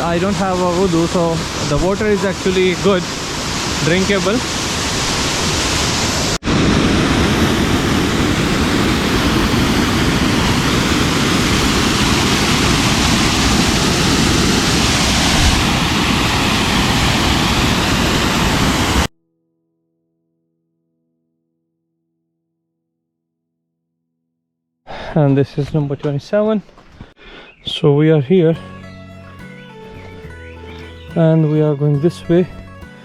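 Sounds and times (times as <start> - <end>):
waterfall rushing: 0.0 - 19.1.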